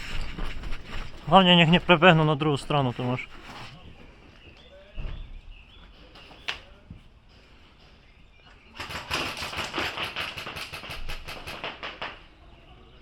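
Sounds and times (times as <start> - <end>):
airsoft rifle firing full auto: 8.8 - 12.2.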